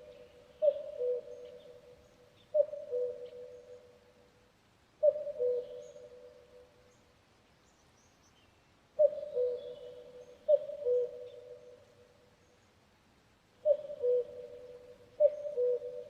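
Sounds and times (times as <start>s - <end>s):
cuckoo calling: 0.0s - 1.9s, 2.5s - 3.9s, 5.0s - 6.3s, 9.0s - 11.8s, 13.6s - 16.0s.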